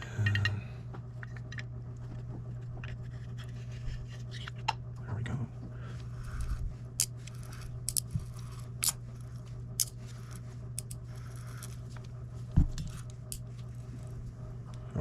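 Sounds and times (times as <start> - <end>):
metal reel parts clinking: 7.0 - 9.0.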